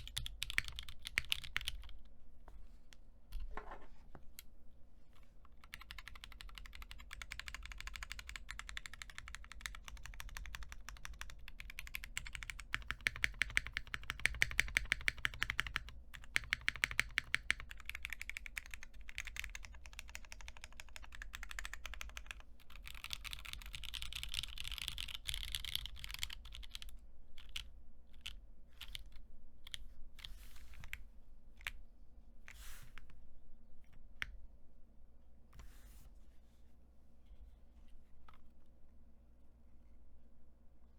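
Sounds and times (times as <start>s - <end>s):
typing on mechanical keyboard: 0.0s - 2.0s, 5.5s - 29.8s.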